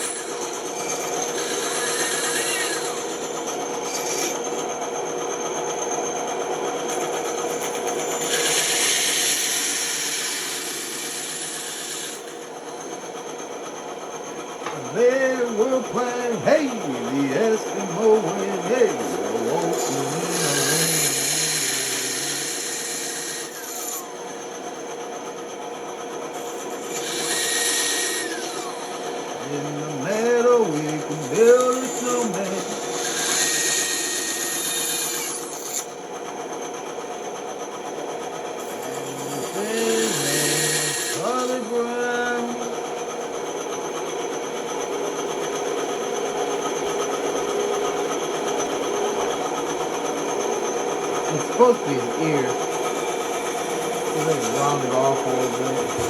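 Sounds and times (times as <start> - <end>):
bandsaw cutting wood: 0.0 - 4.4, 7.6 - 12.5, 14.6 - 24.1, 26.4 - 36.0, 38.6 - 42.6, 46.8 - 56.0.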